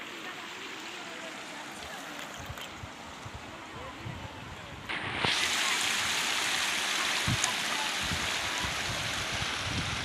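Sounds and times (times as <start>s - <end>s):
heavy rain falling: 4.9s - 10.0s.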